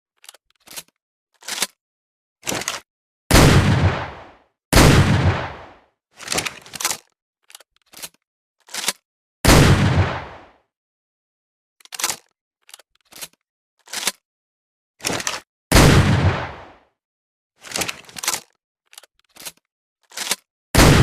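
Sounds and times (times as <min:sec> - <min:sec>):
shotgun blast: 0:03.3 - 0:05.8, 0:09.4 - 0:10.5, 0:15.7 - 0:16.7, 0:20.8 - 0:21.0.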